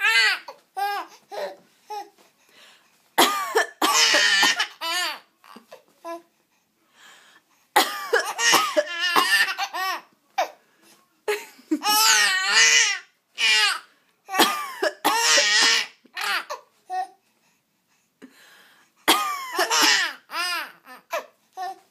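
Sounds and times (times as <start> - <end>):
adult fake-coughing: 3.2 - 4.8, 7.8 - 9.7, 14.3 - 15.9, 19.1 - 20.2.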